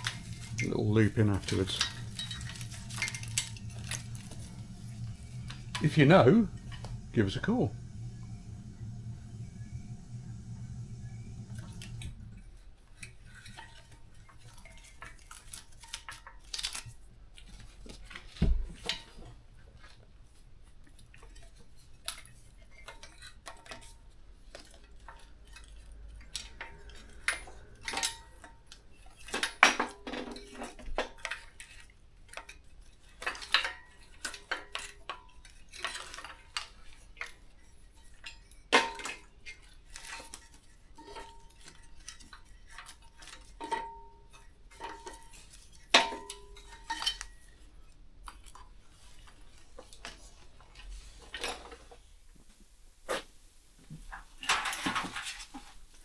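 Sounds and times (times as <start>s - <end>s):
clattering: 0.0s - 12.4s.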